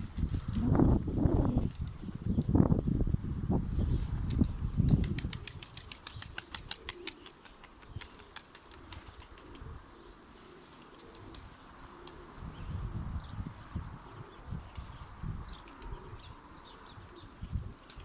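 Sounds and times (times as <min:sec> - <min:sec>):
wind rumble on microphone: 0:00.0 - 0:06.7, 0:12.3 - 0:18.0
pigeon wings flapping and clapping: 0:04.2 - 0:09.9, 0:10.5 - 0:12.4, 0:15.6 - 0:16.1, 0:17.1 - 0:18.0.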